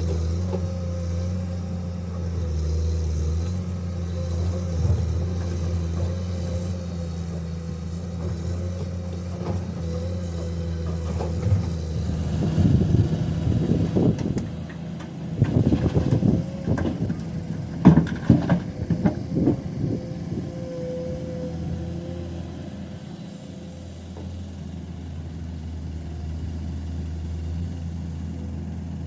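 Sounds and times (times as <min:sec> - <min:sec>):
heavy diesel engine running: 0:00.0 - 0:29.0
rocks clattering into truck bed: 0:15.4 - 0:19.6.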